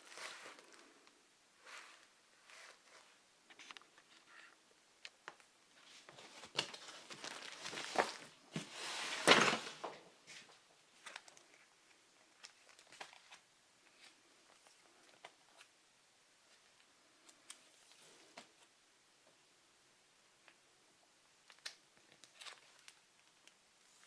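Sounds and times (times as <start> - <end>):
paper and packaging rustling: 0.0 - 4.6, 5.3 - 15.7.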